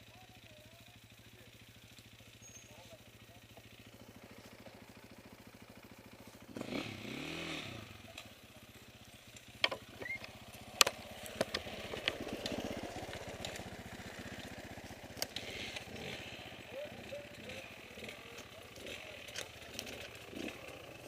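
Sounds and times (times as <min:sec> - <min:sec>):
motorcycle engine revving: 0:00.0 - 0:21.0
sharp clicks and knocks: 0:09.3 - 0:12.6.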